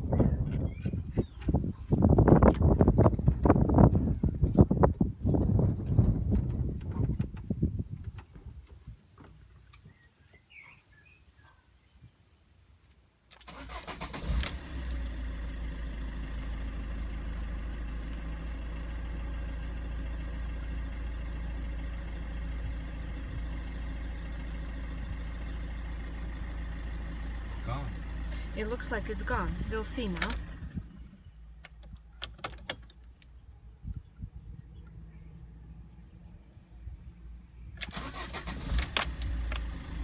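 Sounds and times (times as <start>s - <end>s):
engine starter cranking: 13.3s - 18.0s, 27.6s - 33.2s, 37.8s - 40.0s
car engine idling: 13.5s - 33.3s, 37.8s - 40.0s.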